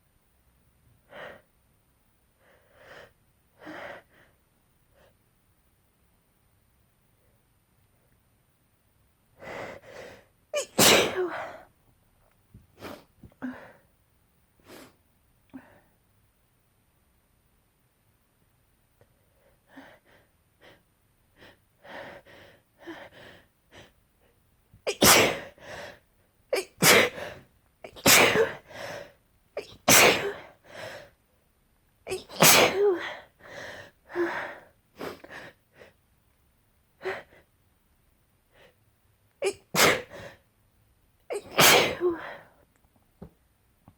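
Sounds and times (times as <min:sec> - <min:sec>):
person sneezing: 0:10.6 - 0:11.5, 0:24.9 - 0:25.6, 0:26.6 - 0:27.3, 0:27.9 - 0:28.6, 0:29.6 - 0:30.5, 0:32.1 - 0:33.2, 0:39.4 - 0:40.2, 0:41.3 - 0:42.4.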